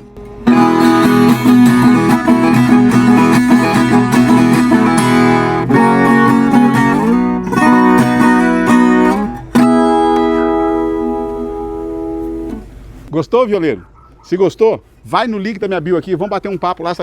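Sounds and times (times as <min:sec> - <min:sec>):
guitar plucked notes and chords: 0:00.0 - 0:13.0.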